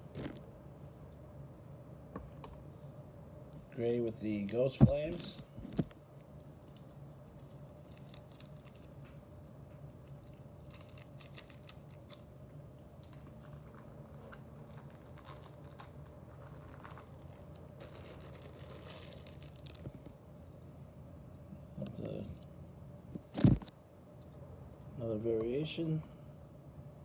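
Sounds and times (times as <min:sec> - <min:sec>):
steady low hum: 0:00.0 - 0:27.0
packaging crinkling and clicks: 0:05.7 - 0:20.2.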